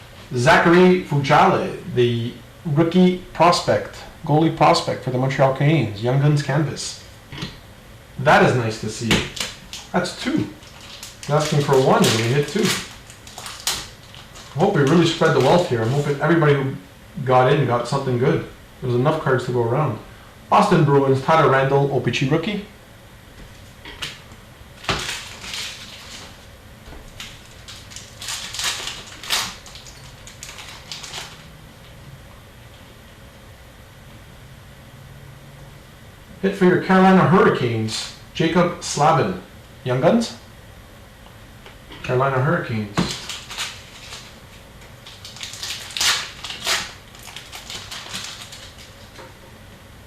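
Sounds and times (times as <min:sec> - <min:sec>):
trading cards rustling: 0:08.9 - 0:16.2, 0:24.8 - 0:26.4, 0:27.1 - 0:31.6, 0:43.0 - 0:49.2
cards flicking and rustling: 0:09.0 - 0:16.1.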